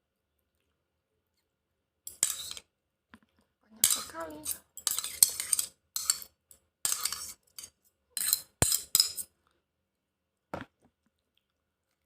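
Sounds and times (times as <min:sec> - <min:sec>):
utensils clinking against a bowl: 0:02.1 - 0:02.6, 0:03.8 - 0:09.3.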